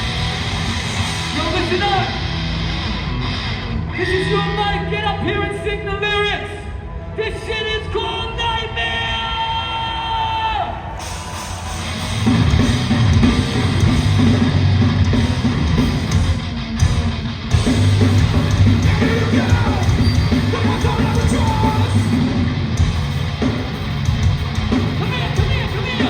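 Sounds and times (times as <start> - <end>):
distorted guitars: 0.0 - 6.1, 10.9 - 26.0
drums: 0.0 - 6.8, 9.1 - 26.0
shouted vocals: 18.6 - 22.2.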